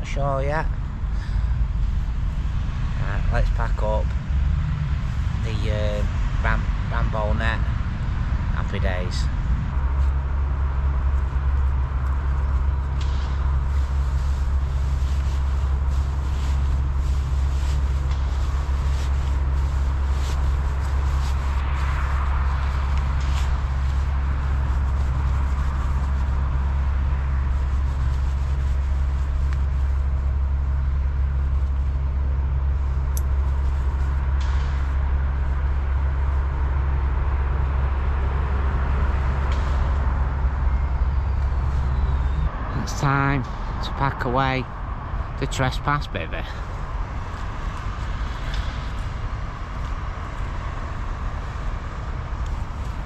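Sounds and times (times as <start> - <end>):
road traffic rumble: 0.0 - 53.0.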